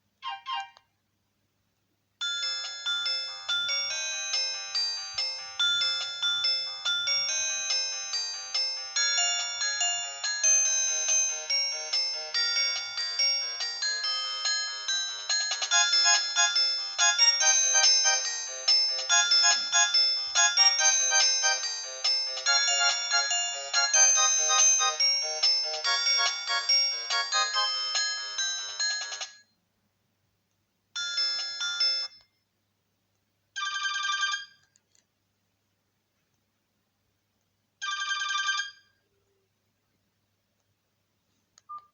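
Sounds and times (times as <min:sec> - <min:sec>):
melodic phone ringtone: 0:02.2 - 0:29.5, 0:31.0 - 0:32.2, 0:33.6 - 0:34.6, 0:37.8 - 0:38.9.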